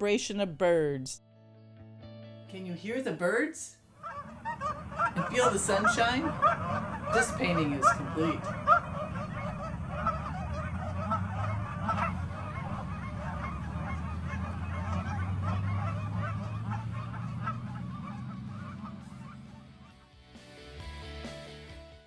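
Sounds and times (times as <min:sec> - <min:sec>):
geese honking: 0:03.9 - 0:20.2
low steady rumble: 0:04.0 - 0:19.9.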